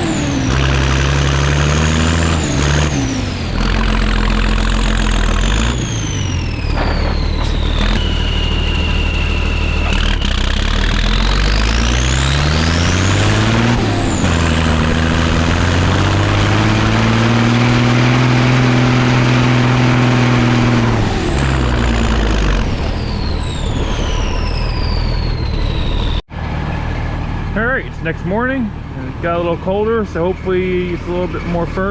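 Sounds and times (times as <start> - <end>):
diesel truck engine revving: 0.0 - 31.9
high whine: 3.7 - 26.8.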